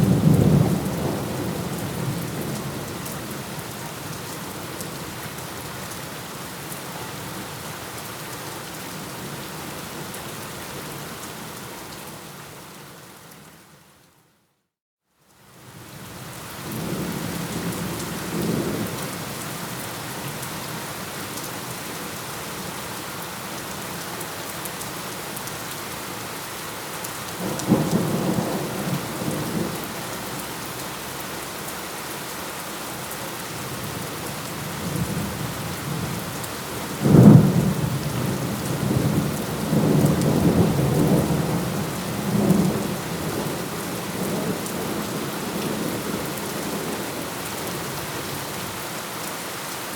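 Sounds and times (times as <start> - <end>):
steady rain: 0.0 - 14.3, 15.2 - 49.9.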